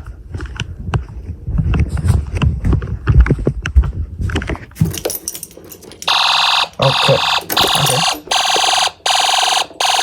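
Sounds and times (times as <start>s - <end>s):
handling noise with thumps: 0.4s - 6.1s.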